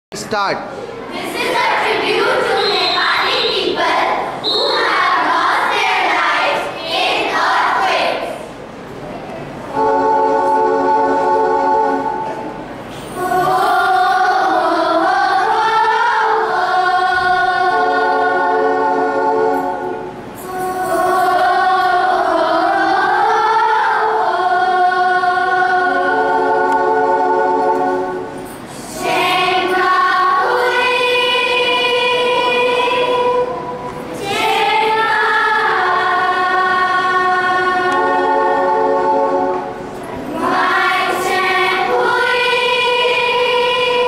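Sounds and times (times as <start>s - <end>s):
choir singing: 1.1s - 8.6s, 9.6s - 44.0s.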